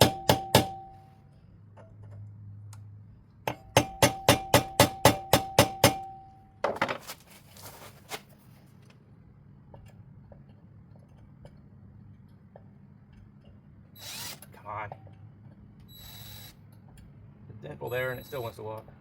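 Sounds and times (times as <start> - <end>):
hammer striking metal: 0.0 - 1.2, 3.5 - 6.5.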